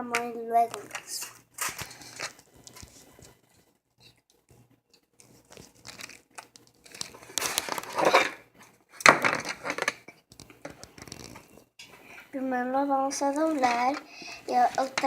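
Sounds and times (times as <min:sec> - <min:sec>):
plastic packaging crinkling: 0:00.7 - 0:03.4, 0:05.2 - 0:08.4, 0:09.0 - 0:11.6, 0:13.3 - 0:15.0.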